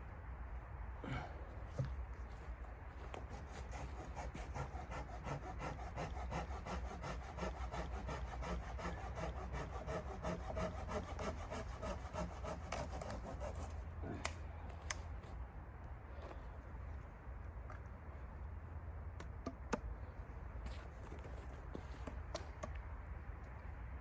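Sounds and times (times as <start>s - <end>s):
hand saw cutting wood: 3.2s - 13.8s.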